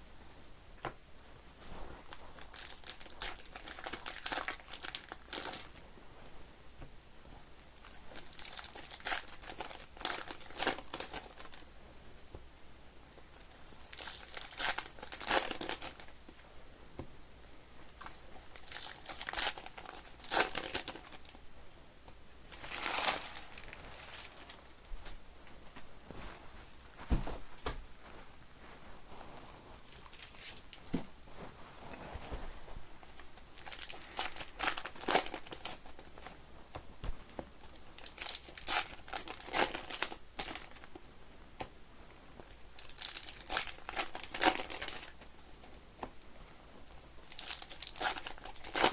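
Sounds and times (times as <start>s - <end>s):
card pack wrappers crinkling and tearing: 2.1s - 5.8s, 7.8s - 11.6s, 13.4s - 16.1s, 18.4s - 21.4s, 22.5s - 24.6s, 33.1s - 36.3s, 37.9s - 41.0s, 42.4s - 45.2s, 47.2s - 48.9s.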